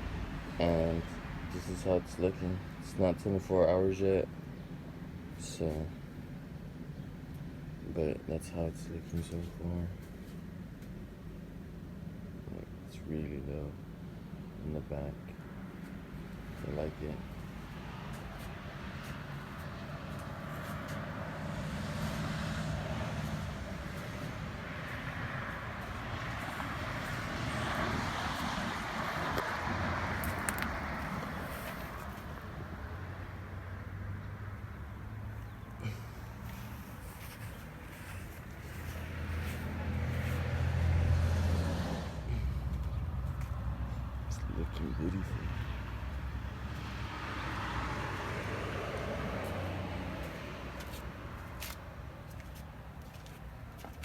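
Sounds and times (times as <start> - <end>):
vehicle passing: 14.8 - 53.8.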